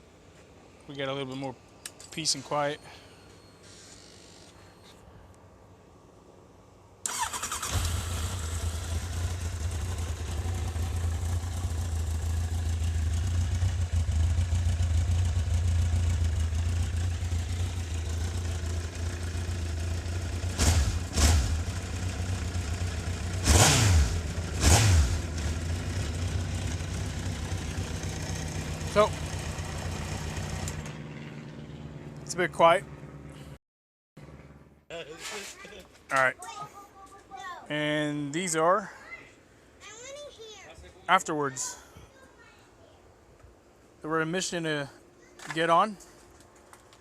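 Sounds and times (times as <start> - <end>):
motorcycle engine idling and revving: 7.1 - 33.6.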